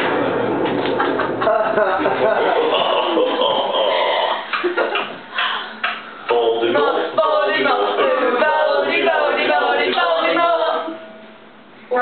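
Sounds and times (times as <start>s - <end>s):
girls singing without instruments: 6.3s - 11.2s.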